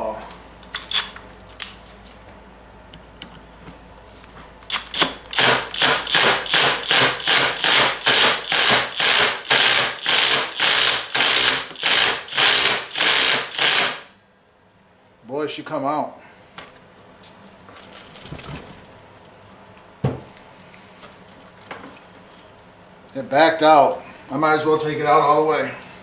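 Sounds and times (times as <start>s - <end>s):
tool rattling bursts: 4.7s - 14.1s.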